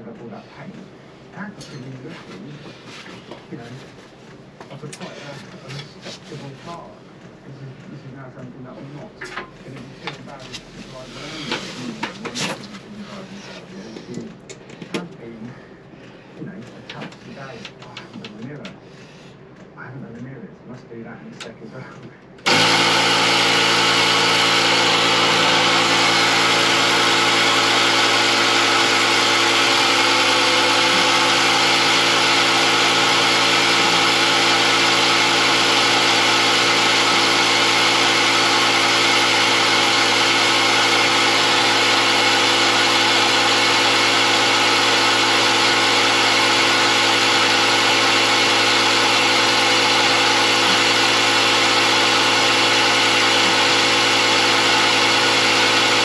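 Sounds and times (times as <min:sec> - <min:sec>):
motor droning steadily: 0:21.0 - 0:56.0.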